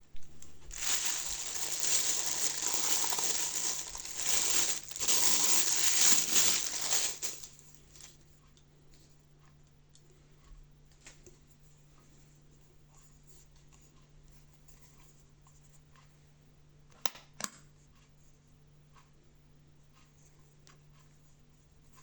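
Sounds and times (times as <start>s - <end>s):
packaging crinkling: 0.2s - 8.1s.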